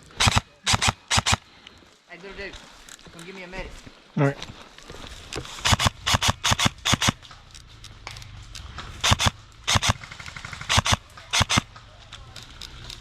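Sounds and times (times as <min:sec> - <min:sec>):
airsoft guns firing: 0:00.0 - 0:01.5, 0:05.6 - 0:07.3, 0:09.0 - 0:11.9.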